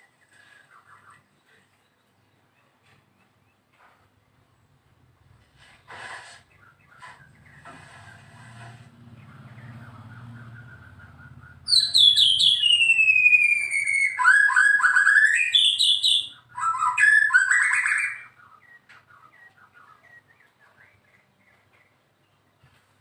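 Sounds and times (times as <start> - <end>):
songbird singing: 0.0 - 5.0, 6.4 - 23.0.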